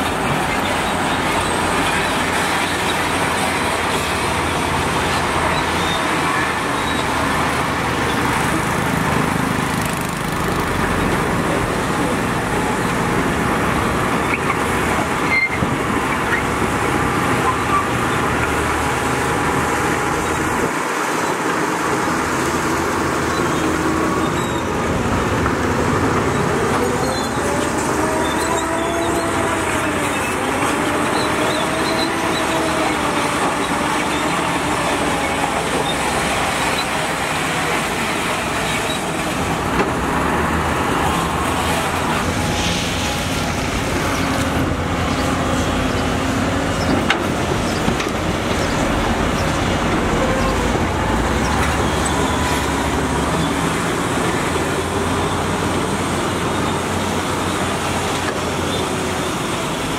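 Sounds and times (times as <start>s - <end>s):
heavy diesel machinery running: 0.0s - 59.9s
machinery whining: 22.9s - 59.9s.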